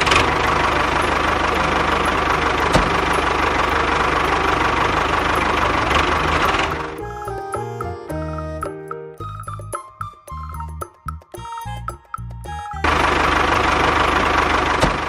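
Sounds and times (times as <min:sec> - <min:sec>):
engine running with knocking beat: 0:00.0 - 0:07.7, 0:11.9 - 0:15.0
background music with jingly notes: 0:00.0 - 0:14.5.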